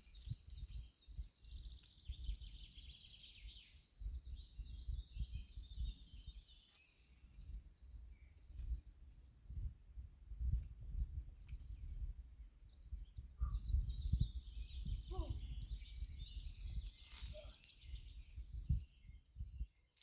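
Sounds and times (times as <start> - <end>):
wind buffeting microphone: 0.0 - 6.4, 7.5 - 19.7
songbird singing high trills: 12.4 - 19.7.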